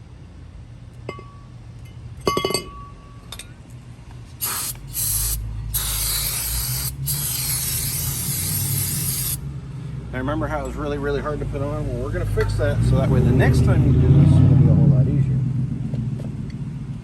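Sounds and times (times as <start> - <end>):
metallic clinks: 1.0 - 3.8
aerosol spray can hissing: 4.4 - 9.4.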